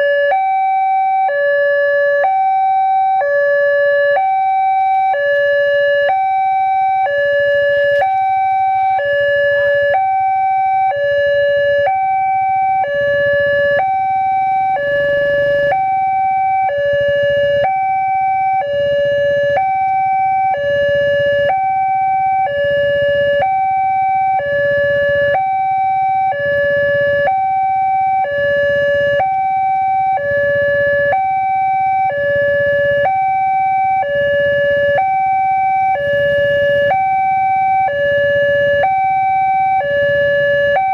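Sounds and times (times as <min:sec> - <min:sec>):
level crossing two-tone siren: 0:00.0 - 0:40.9.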